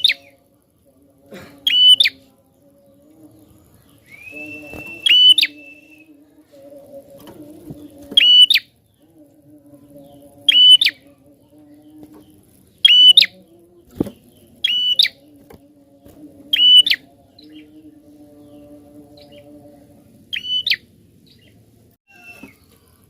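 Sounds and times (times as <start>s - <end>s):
bird trilled calls: 0.0s - 0.3s, 4.0s - 5.8s, 8.2s - 8.8s, 10.4s - 11.1s, 12.8s - 13.4s, 14.4s - 15.2s, 16.5s - 17.7s, 20.3s - 21.5s
faint steady low hum: 0.0s - 23.0s.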